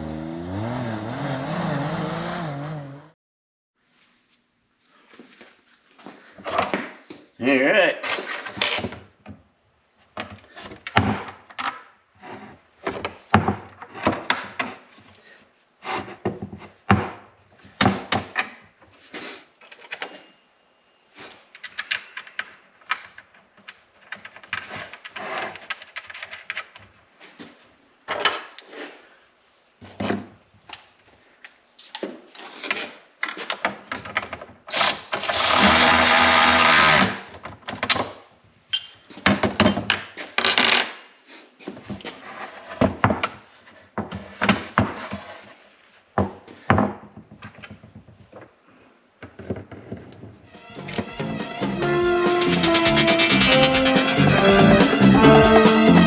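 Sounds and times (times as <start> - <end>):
power tool running: 0.0 - 3.1, 34.7 - 37.1, 50.9 - 55.5
tools and metal parts clattering: 19.7 - 20.5.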